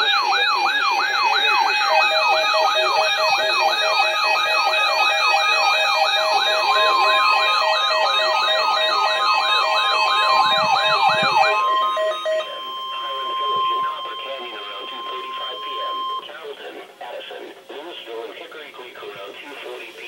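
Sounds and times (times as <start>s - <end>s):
yelping emergency siren: 0.0s - 16.2s
pulsing beeps: 0.0s - 16.3s
steady electronic tone: 6.5s - 16.2s.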